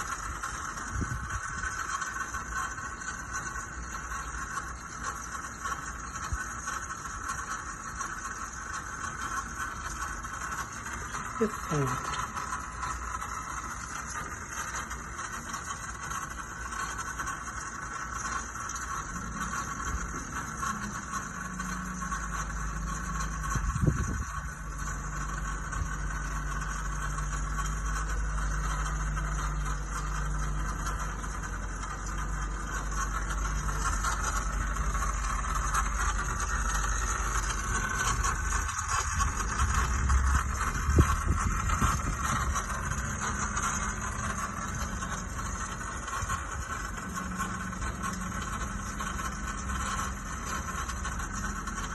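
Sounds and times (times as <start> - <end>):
starter motor whine: 0.0 - 51.9
car engine running: 18.7 - 51.9.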